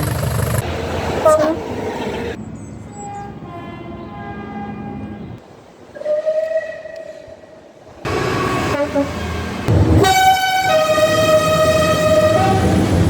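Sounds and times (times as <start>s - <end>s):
train noise: 0.0s - 13.0s
train horn blast: 2.9s - 5.4s, 6.0s - 7.3s, 8.4s - 12.9s.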